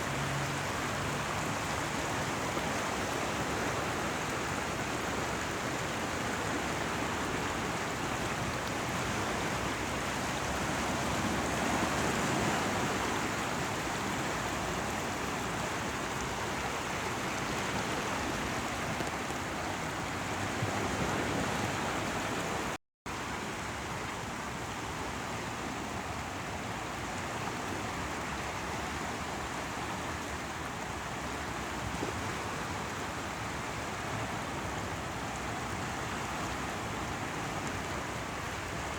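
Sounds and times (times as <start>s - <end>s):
waves breaking: 0.0s - 22.8s
running water: 0.0s - 38.9s.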